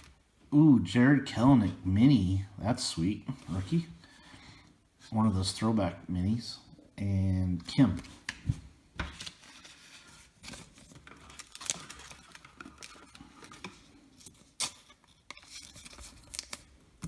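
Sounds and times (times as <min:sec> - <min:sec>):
cards clicking and rustling: 0:07.7 - 0:17.0.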